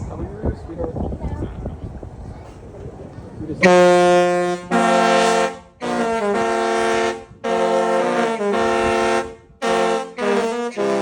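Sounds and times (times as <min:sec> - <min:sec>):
ship's horn playing a tune: 0:03.6 - 0:11.0.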